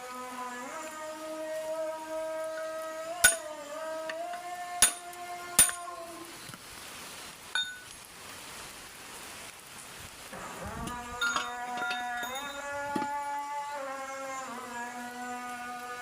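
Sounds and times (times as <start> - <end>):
sharp metallic clinks: 3.2 - 3.5, 5.6 - 5.9, 7.6 - 7.9, 11.2 - 12.7.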